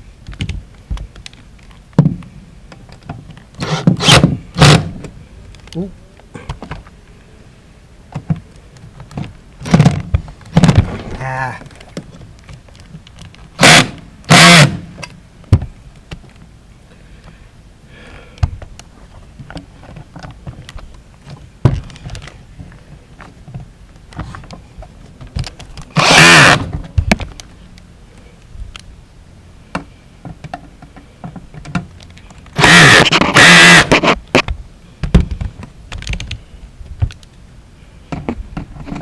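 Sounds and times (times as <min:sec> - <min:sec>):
power drill bursts: 0:03.6 - 0:04.9, 0:13.6 - 0:14.9, 0:26.0 - 0:26.7, 0:32.6 - 0:34.2
handling knocks and clicks: 0:18.4 - 0:26.0.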